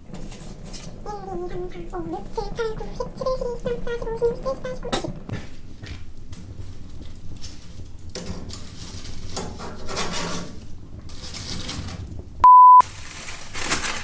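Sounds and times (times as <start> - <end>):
rustling and scraping food: 0.0 - 14.0
electronic beep: 12.4 - 12.8.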